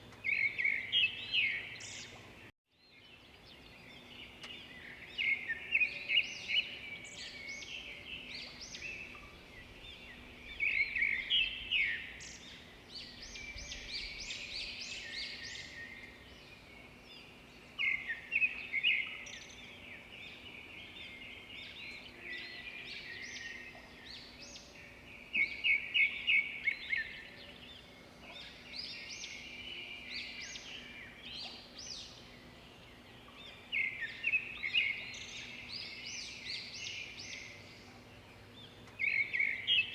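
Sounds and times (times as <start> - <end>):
songbirds chirping and singing: 0.0 - 39.9.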